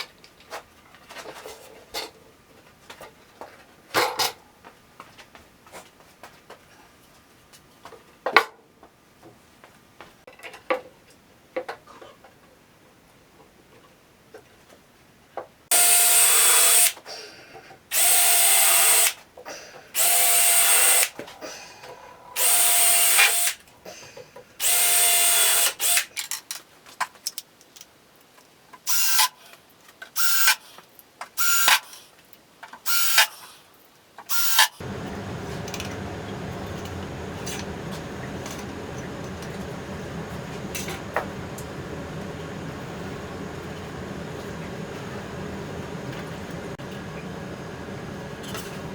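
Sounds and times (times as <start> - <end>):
power drill whining: 15.7 - 17.0, 17.9 - 19.2, 20.0 - 21.1, 22.4 - 23.6, 24.6 - 26.0, 34.3 - 48.9
machine hum with low drone: 34.8 - 48.9.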